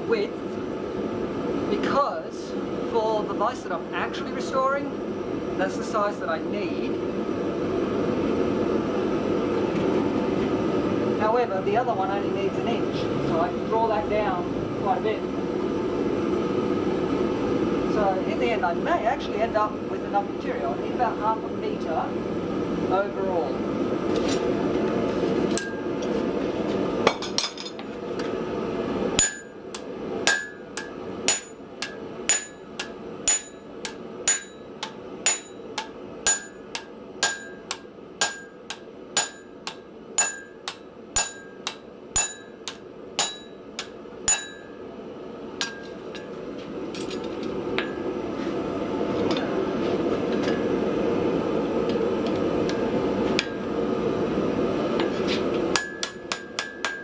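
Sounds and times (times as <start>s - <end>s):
hammer striking steel on anvil: 25.6s - 26.1s, 29.2s - 44.9s, 45.6s - 46.3s, 47.0s - 48.1s, 52.7s - 53.7s, 55.7s - 57.0s.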